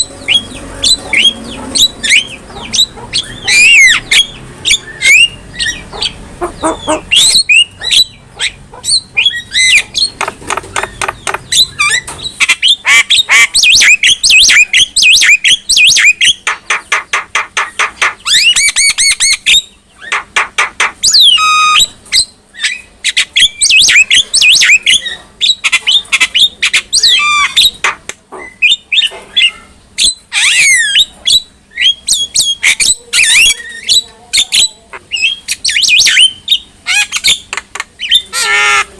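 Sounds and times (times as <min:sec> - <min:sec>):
bird squawks and whistles: 0:21.0 - 0:34.0.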